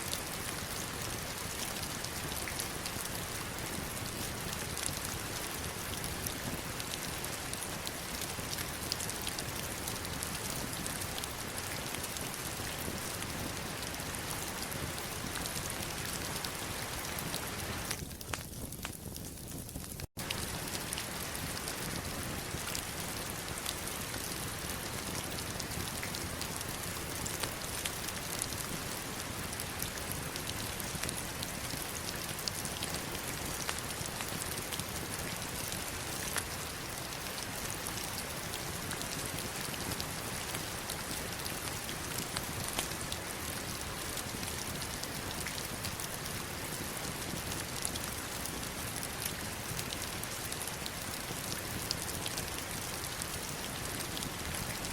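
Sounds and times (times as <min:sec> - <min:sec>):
heavy rain falling: 0:00.2 - 0:18.0, 0:20.2 - 0:46.2.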